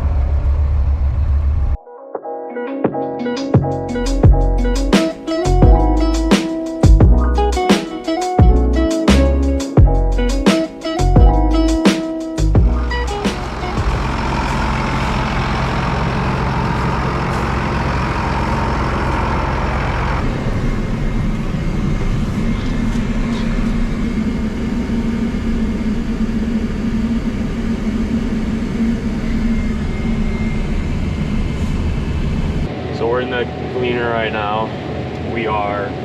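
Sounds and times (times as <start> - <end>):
combine harvester running: 10.3 - 36.0
steady low hum: 12.4 - 36.0.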